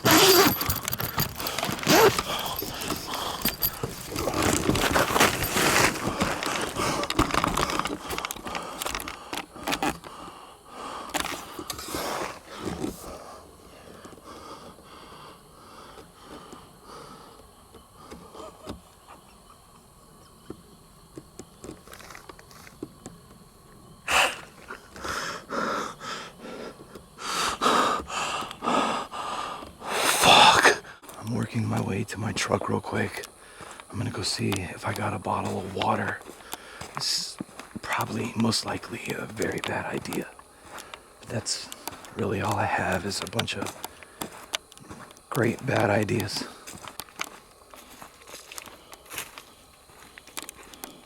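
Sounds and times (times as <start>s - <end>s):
rustling and handling noise: 0.0s - 10.2s
man breathing heavily: 0.0s - 18.7s, 24.1s - 31.2s, 33.3s - 33.9s, 36.2s - 37.7s, 40.4s - 42.2s, 43.6s - 45.0s.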